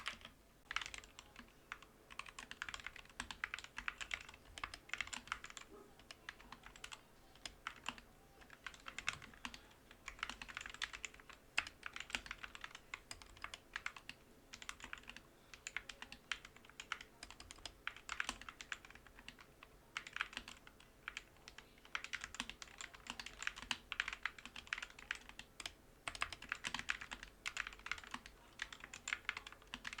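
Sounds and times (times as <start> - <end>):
mechanical keyboard typing: 0.0 - 30.0.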